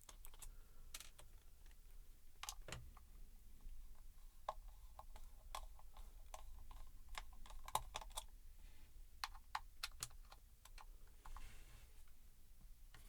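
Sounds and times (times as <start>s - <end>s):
small plastic and metal parts clicking: 0.0s - 1.8s.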